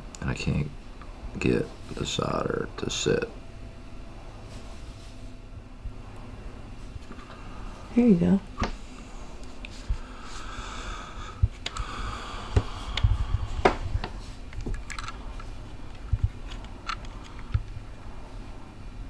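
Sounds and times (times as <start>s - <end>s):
tools and parts clicking and knocking: 14.5s - 17.5s.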